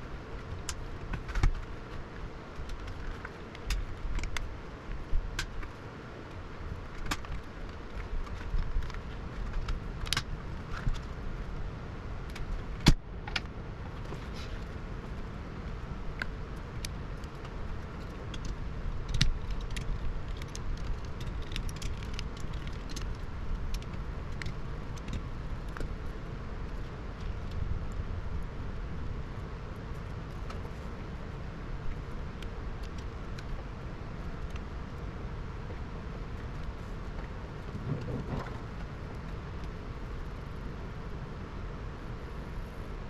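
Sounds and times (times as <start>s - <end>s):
steady low rumble: 0.0s - 43.0s
small tools clicking and tapping: 16.2s - 25.9s.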